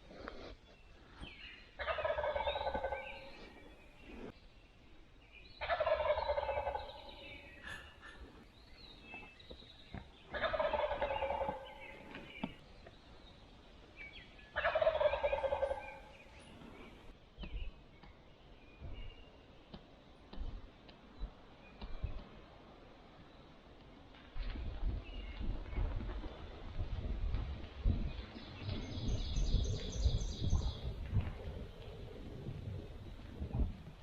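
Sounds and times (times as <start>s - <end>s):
turkey gobbling: 1.8s - 3.2s, 5.6s - 8.2s, 10.3s - 11.8s, 14.6s - 16.1s.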